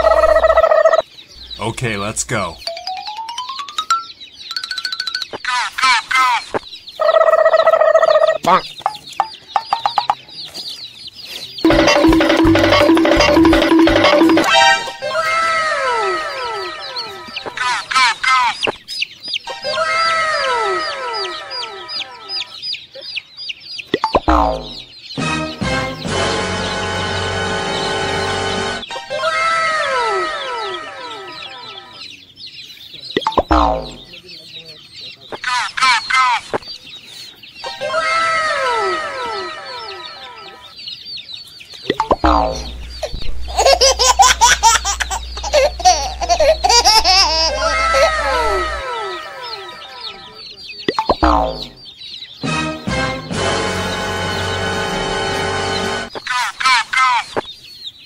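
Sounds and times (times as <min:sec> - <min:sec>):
chicks peeping: 0:00.0 - 0:58.0
steady low hum: 0:42.2 - 0:48.8.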